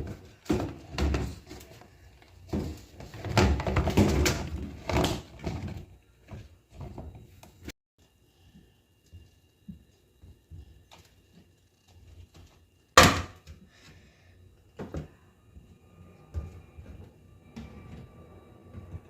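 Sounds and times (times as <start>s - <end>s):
refrigerator contents knocking: 13.0s - 13.6s.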